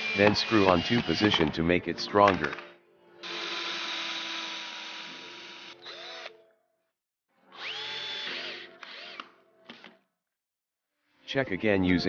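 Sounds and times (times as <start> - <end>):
power drill driving screws: 0.0 - 1.6, 3.2 - 6.3, 7.6 - 9.9.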